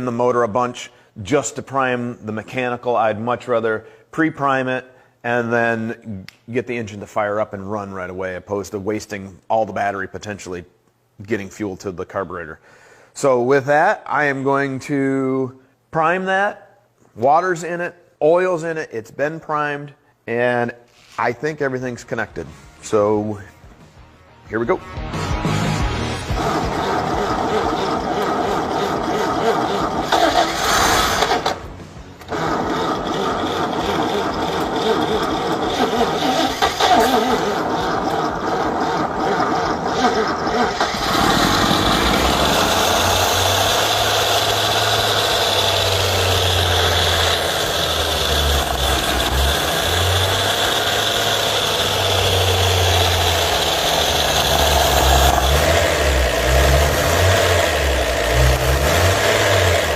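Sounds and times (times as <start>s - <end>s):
engine idling: 26.3s - 31.7s, 32.3s - 59.9s
engine cranking on starter: 26.3s - 59.9s.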